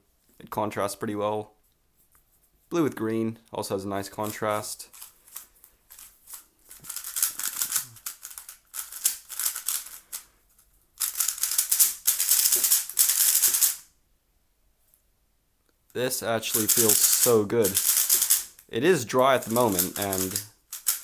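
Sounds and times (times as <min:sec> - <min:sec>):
puzzle cube plastic clicking: 0:06.7 - 0:10.2, 0:11.0 - 0:13.8, 0:16.5 - 0:21.0.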